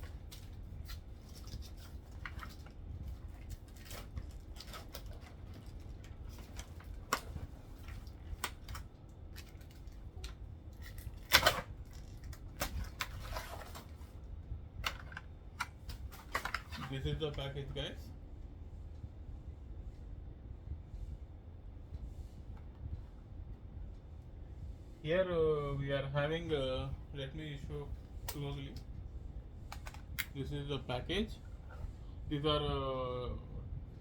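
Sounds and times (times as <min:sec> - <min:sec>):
packaging crinkling: 0:00.1 - 0:14.0.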